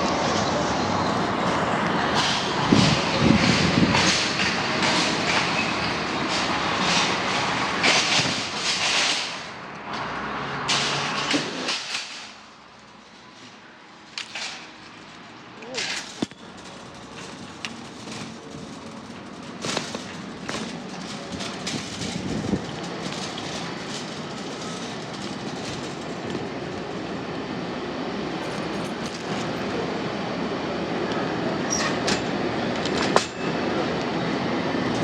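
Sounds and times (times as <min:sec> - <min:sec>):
shopping cart wheels rattling: 0:02.2 - 0:09.5, 0:10.7 - 0:27.4.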